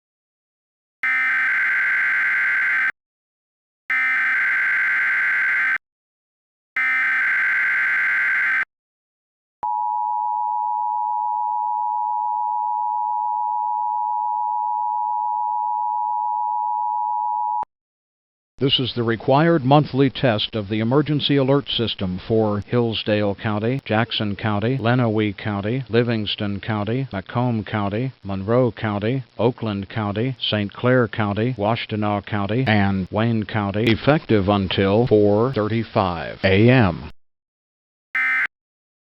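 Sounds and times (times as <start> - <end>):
rapid digital data tones: 1.0 - 2.9, 3.9 - 5.8, 6.8 - 8.7, 38.2 - 38.5
steady two-tone attention signal: 6.8 - 8.7, 38.2 - 38.5.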